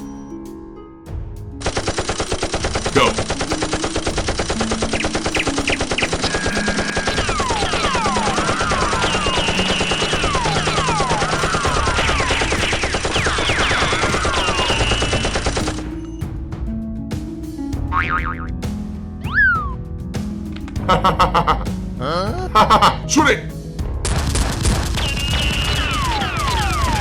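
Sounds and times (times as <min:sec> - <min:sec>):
automatic gunfire rattle: 0:01.6 - 0:15.9
falling whistles: 0:04.9 - 0:16.2, 0:19.2 - 0:19.8, 0:25.0 - 0:27.0.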